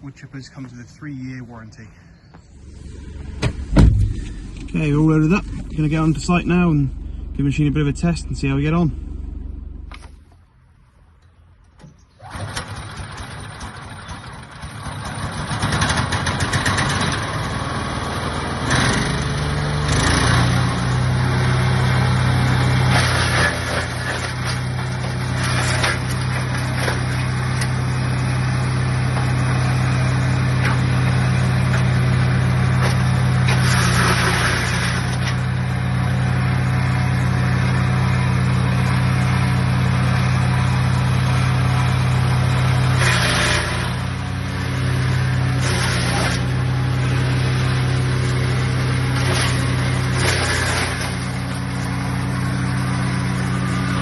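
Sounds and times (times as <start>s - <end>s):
wood chipper engine running: 0.0s - 10.6s, 11.8s - 54.0s.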